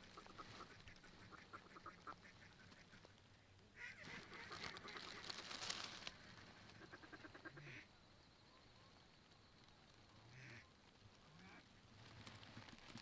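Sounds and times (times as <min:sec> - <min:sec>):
ducks quacking: 0:00.1 - 0:03.0, 0:03.8 - 0:05.3.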